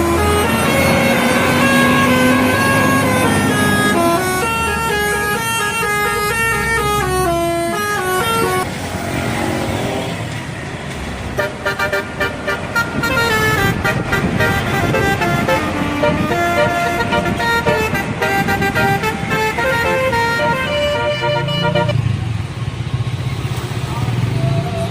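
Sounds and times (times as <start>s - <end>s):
bus horns playing a melody: 0.0s - 8.8s, 11.3s - 22.1s
vehicle noise: 0.0s - 24.9s.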